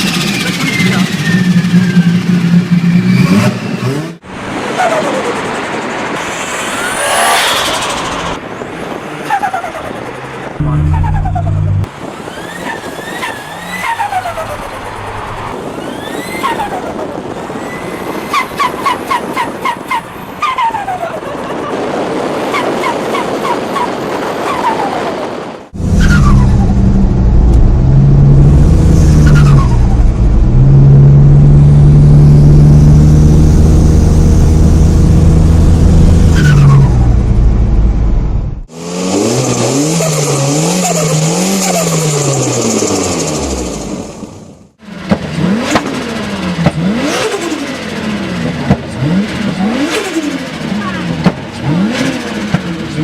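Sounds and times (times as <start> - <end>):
loud car engine running: 9.8 - 12.6, 25.2 - 53.0.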